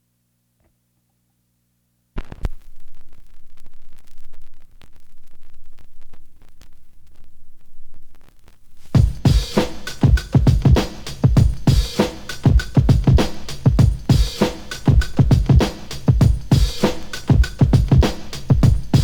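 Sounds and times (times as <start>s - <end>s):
crackling static with clicks: 2.1s - 9.0s.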